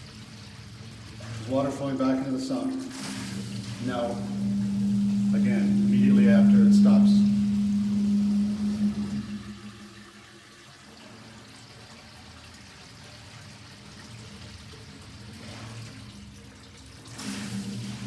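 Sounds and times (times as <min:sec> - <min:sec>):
sump pump motor hum: 0:00.0 - 0:12.0, 0:13.7 - 0:18.0
water trickling into a pit: 0:00.0 - 0:18.0.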